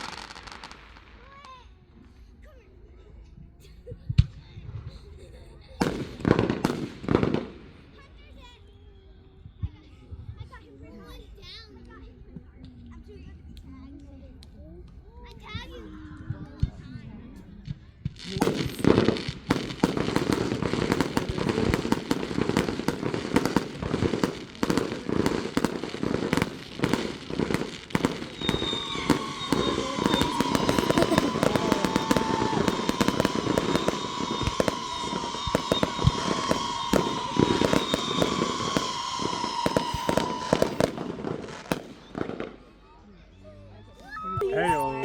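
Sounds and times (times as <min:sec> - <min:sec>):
fireworks bangs and crackling: 0:00.0 - 0:02.2, 0:05.6 - 0:08.4, 0:16.3 - 0:43.0
firework whistle: 0:19.5 - 0:42.4.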